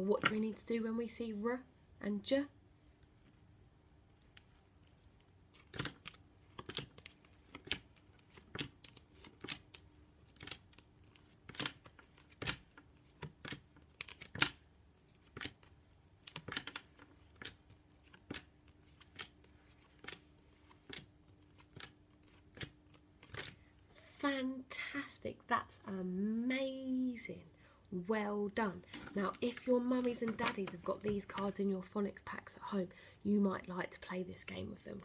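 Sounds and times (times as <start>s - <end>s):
faint steady hum: 0.0s - 35.0s
flashcards flicking: 4.3s - 23.7s.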